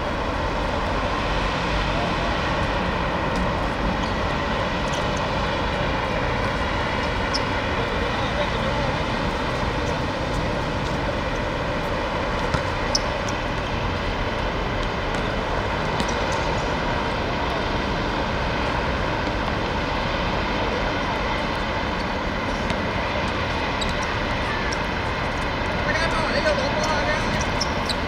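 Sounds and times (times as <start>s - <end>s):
outdoor rumble and hiss: 0.0s - 28.0s.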